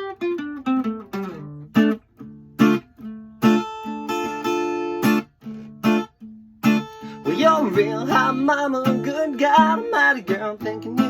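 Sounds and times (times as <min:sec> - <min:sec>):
acoustic guitar plucked notes: 0:00.0 - 0:11.0
acoustic guitar strummed chords: 0:00.0 - 0:11.0.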